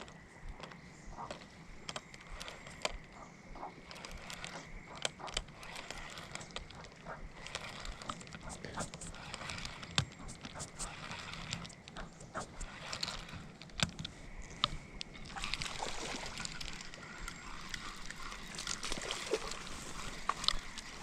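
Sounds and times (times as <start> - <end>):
small clicks and knocks: 0.0 - 21.0
river water sloshing and gurgling: 15.2 - 21.0.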